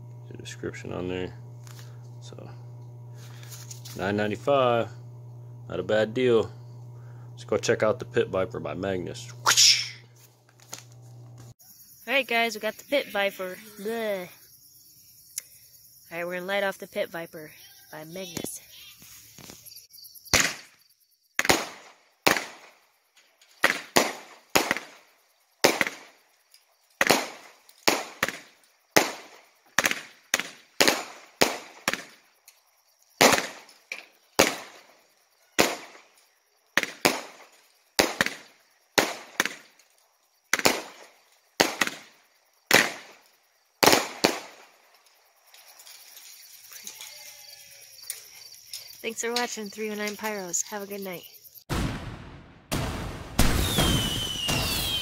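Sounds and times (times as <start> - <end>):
firework cake bangs: 20.3 - 20.7, 21.4 - 22.8, 23.6 - 25.0, 25.6 - 26.1, 27.0 - 32.2, 33.2 - 33.6, 34.4 - 34.8, 35.6 - 36.0, 36.8 - 39.7, 40.5 - 42.1, 42.7 - 43.2, 43.8 - 44.6, 51.7 - 55.0.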